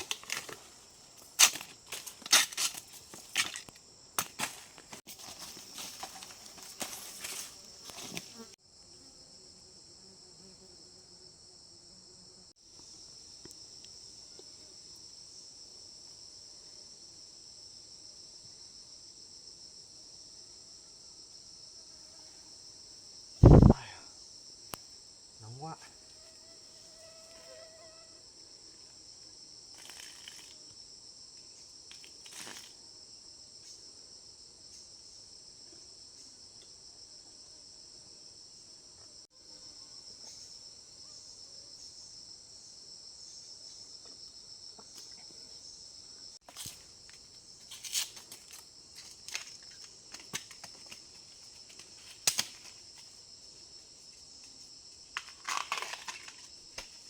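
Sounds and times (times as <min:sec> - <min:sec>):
insects droning: 0:00.0 - 0:57.0
sharp snaps and clicks: 0:52.2 - 0:52.6.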